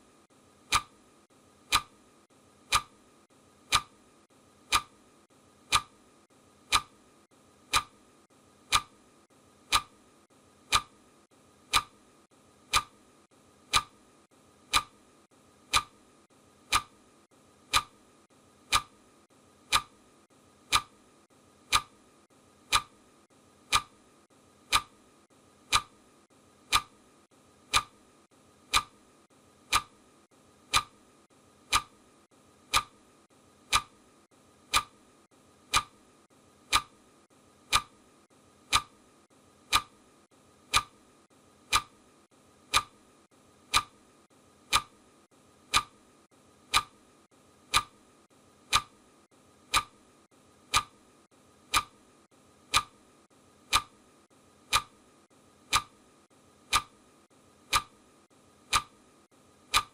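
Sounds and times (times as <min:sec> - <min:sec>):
clock ticking: 0:00.6 - 0:01.0, 0:01.6 - 0:02.0, 0:02.6 - 0:03.0, 0:03.6 - 0:04.0, 0:04.6 - 0:06.0, 0:06.6 - 0:12.0, 0:12.6 - 0:14.0, 0:14.6 - 0:15.0, 0:15.6 - 0:16.0, 0:16.6 - 0:17.0, 0:17.6 - 0:18.0, 0:18.6 - 0:19.0, 0:19.6 - 0:20.0, 0:20.6 - 0:21.0, 0:21.6 - 0:22.0, 0:22.6 - 0:23.0, 0:23.6 - 0:24.0, 0:24.6 - 0:25.0, 0:25.6 - 0:26.0, 0:26.6 - 0:27.0, 0:27.6 - 0:28.0, 0:28.6 - 0:29.0, 0:29.6 - 0:30.0, 0:30.6 - 0:31.0, 0:31.6 - 0:32.0, 0:32.6 - 0:33.0, 0:33.6 - 0:34.0, 0:34.6 - 0:35.0, 0:35.6 - 0:36.0, 0:36.6 - 0:37.0, 0:37.6 - 0:38.0, 0:38.6 - 0:39.0, 0:39.6 - 0:40.0, 0:40.6 - 0:41.0, 0:41.6 - 0:42.0, 0:42.6 - 0:43.0, 0:43.6 - 0:44.0, 0:44.6 - 0:45.0, 0:45.6 - 0:46.0, 0:46.6 - 0:47.0, 0:47.6 - 0:48.0, 0:48.6 - 0:49.0, 0:49.7 - 0:50.1, 0:50.7 - 0:51.0, 0:51.6 - 0:52.1, 0:52.7 - 0:53.0, 0:53.6 - 0:54.0, 0:54.6 - 0:55.0, 0:55.7 - 0:56.0, 0:56.6 - 0:57.0, 0:57.7 - 0:58.0, 0:58.6 - 0:59.0, 0:59.7 - 0:59.9.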